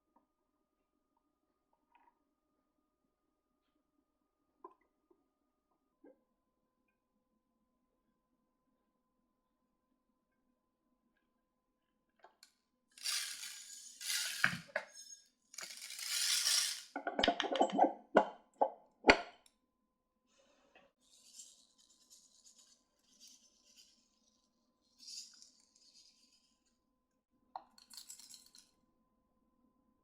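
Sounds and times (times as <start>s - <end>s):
short hissing bursts: 13.0s - 14.7s
small objects clinking on surface: 13.0s - 17.0s, 27.6s - 28.7s.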